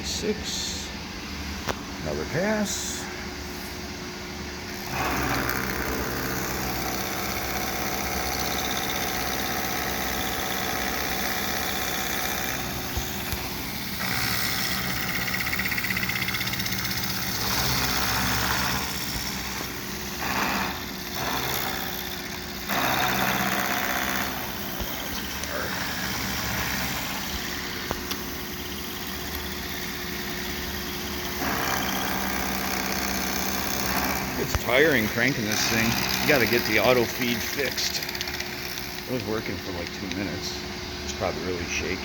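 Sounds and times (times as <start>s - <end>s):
milling machine motor hum: 0.6s - 42.0s
cutter hissing through plastic: 4.8s - 40.5s.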